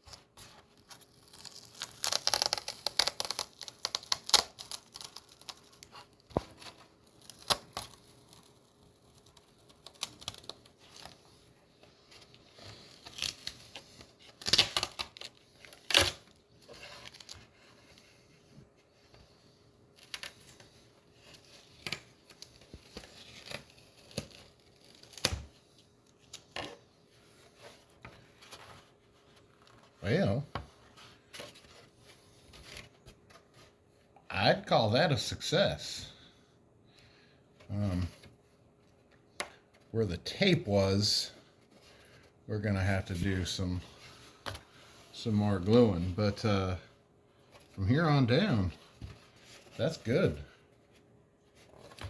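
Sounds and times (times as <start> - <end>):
tape crinkling: 0.1 - 11.4
tape ripping off plastic: 1.0 - 6.3, 14.4 - 16.3.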